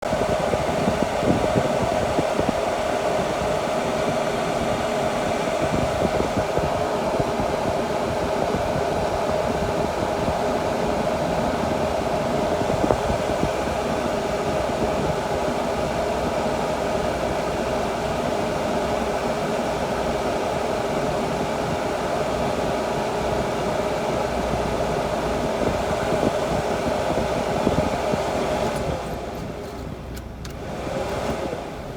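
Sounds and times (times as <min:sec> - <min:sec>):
air conditioning blower fan: 0:00.0 - 0:31.9.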